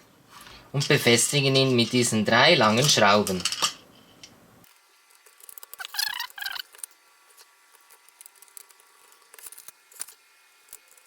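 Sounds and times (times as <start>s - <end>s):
hardware rattle: 1.7s - 4.4s.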